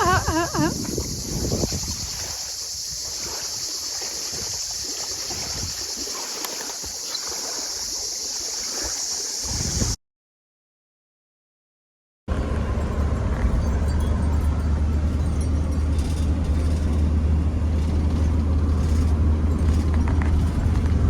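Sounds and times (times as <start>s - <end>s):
vehicle engine and tyres rumbling: 12.3s - 21.0s.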